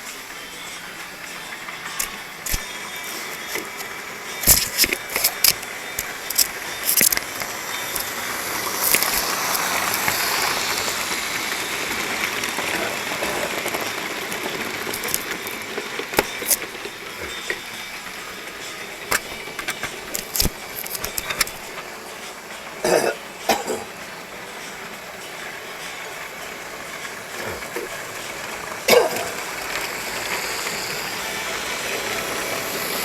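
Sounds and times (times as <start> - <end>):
model train motor and wheel hum: 0.0 - 33.0
sharp clicks: 2.0 - 8.2, 8.8 - 10.9.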